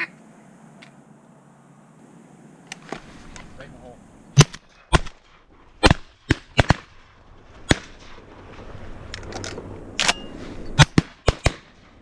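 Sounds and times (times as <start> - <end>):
shotgun shots: 4.4 - 7.0, 7.6 - 8.2, 10.0 - 12.0.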